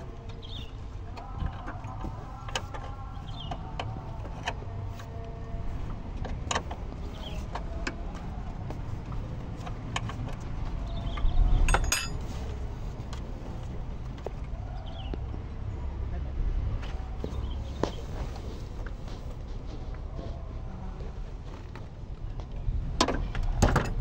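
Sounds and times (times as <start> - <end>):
metal clatter: 11.6 - 12.3
metal tools clinking on metal: 11.6 - 12.4.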